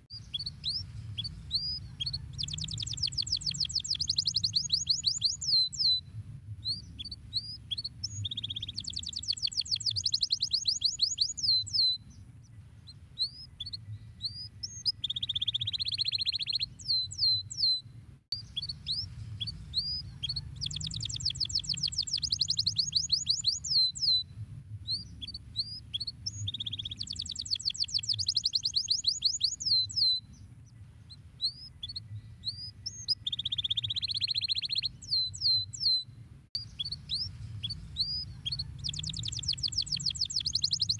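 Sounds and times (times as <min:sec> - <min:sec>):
canary singing: 0:00.0 - 0:06.0, 0:06.7 - 0:12.2, 0:12.8 - 0:24.2, 0:24.9 - 0:30.4, 0:31.1 - 0:36.0, 0:36.6 - 0:40.9
faint low hum: 0:00.0 - 0:27.8.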